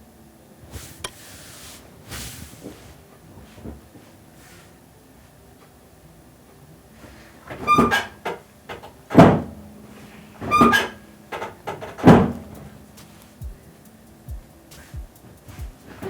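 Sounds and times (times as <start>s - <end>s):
music with percussive hits: 12.5s - 16.0s.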